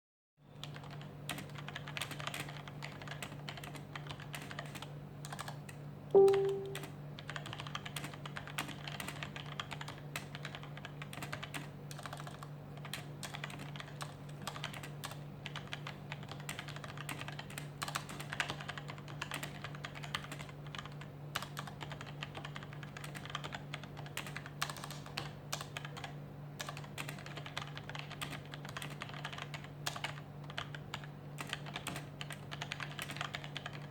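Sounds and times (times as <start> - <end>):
mechanical keyboard typing: 0.6 - 33.9
brief loud tone: 6.2 - 6.9.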